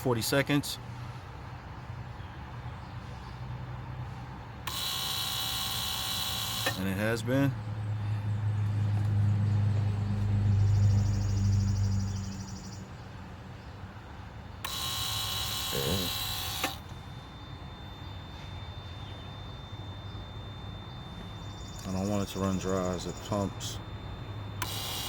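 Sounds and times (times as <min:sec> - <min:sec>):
electric pump motor humming: 0:04.6 - 0:06.9, 0:14.5 - 0:25.0.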